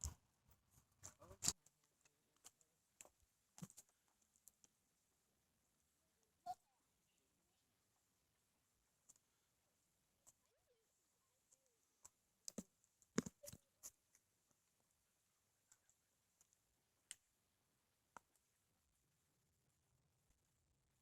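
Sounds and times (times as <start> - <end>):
faint clicks and taps: 0.0 - 4.8, 9.0 - 9.3, 10.2 - 10.6, 11.4 - 15.0, 15.6 - 17.3, 18.1 - 18.6.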